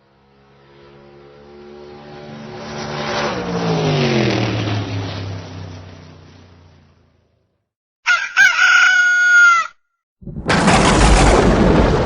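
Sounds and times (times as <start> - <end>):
car passing at speed: 0.2 - 6.8.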